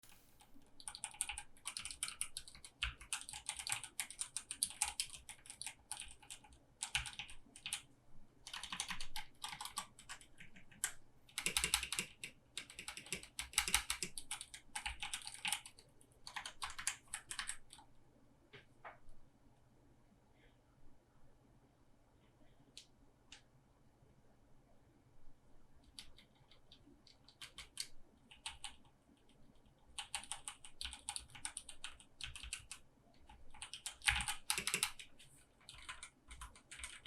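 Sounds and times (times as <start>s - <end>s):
mechanical keyboard typing: 0.8s - 7.8s, 8.4s - 17.9s, 25.8s - 37.0s.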